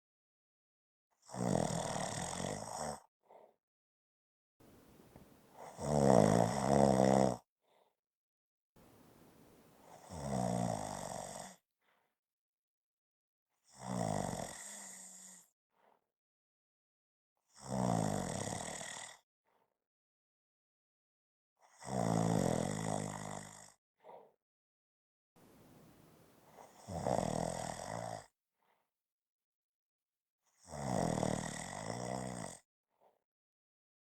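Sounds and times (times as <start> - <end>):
person snoring: 1.3 - 3.0, 4.8 - 7.4, 9.0 - 11.6, 21.8 - 23.7, 25.6 - 28.3, 30.7 - 32.6.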